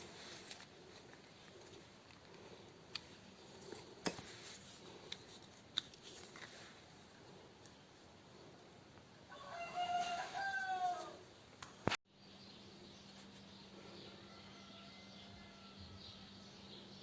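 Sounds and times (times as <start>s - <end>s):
rooster crowing: 9.3s - 11.2s, 14.1s - 16.3s.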